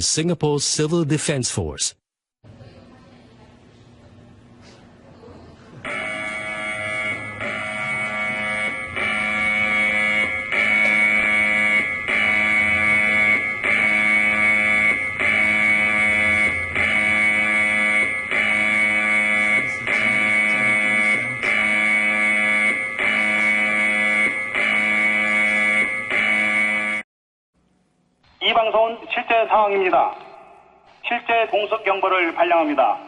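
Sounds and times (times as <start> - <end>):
buzzing electronic alarm pulses: 5.8 - 27.0.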